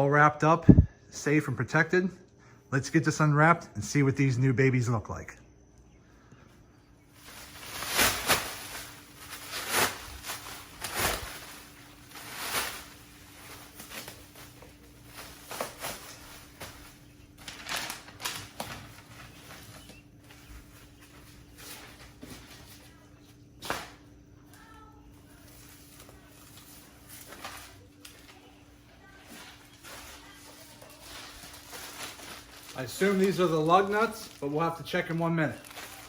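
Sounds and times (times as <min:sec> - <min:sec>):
plastic wrapping crinkling and ripping: 0:07.2 - 0:22.9, 0:24.6 - 0:36.0.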